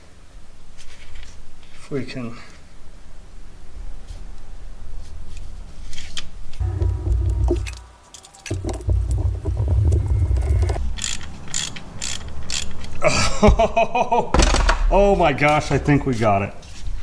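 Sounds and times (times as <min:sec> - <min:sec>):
wrench rumbling and knocking: 0:06.6 - 0:13.0.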